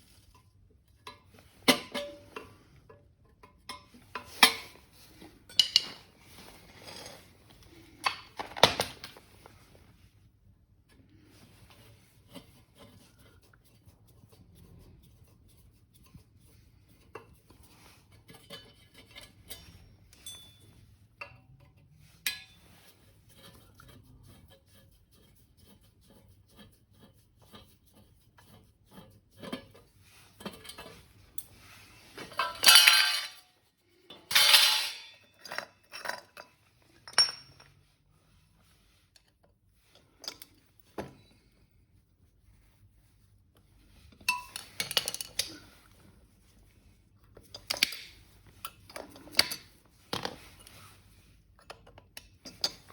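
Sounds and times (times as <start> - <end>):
small metal parts clinking: 32.4 - 33.4, 34.3 - 36.3
metal scraping: 34.2 - 36.2.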